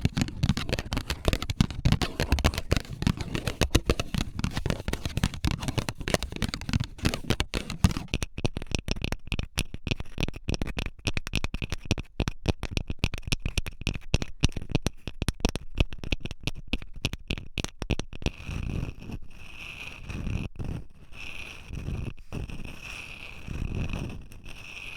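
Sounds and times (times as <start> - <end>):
fingernails tapping on surface: 0.0 - 8.2
soft rubbing and scratching: 0.0 - 8.2.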